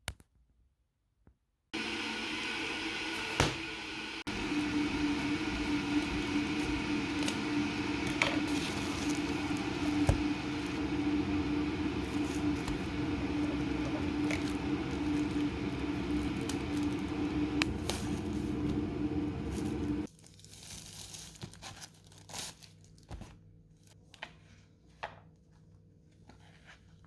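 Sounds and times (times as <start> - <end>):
appliance motor humming: 1.8 - 20.1.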